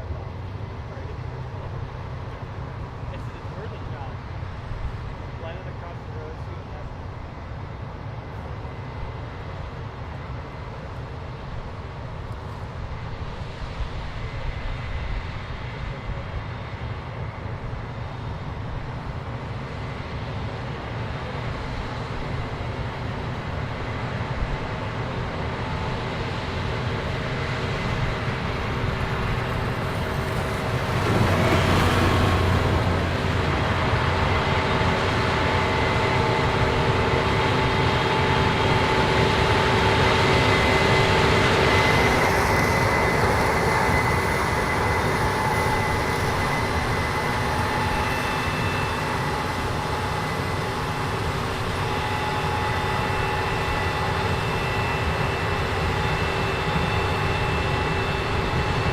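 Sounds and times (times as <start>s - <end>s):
heavy diesel machinery running: 18.4s - 58.9s.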